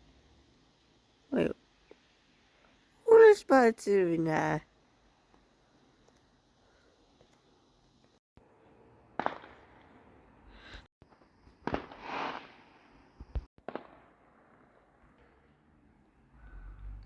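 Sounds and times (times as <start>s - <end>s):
fireworks crackling: 9.2s - 9.9s, 10.6s - 14.2s
fireworks exploding: 9.2s - 15.4s.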